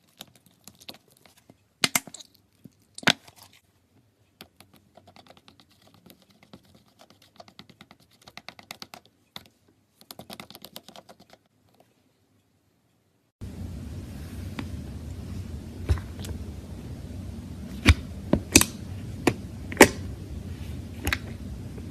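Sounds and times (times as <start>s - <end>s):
low rumble: 13.4s - 21.9s.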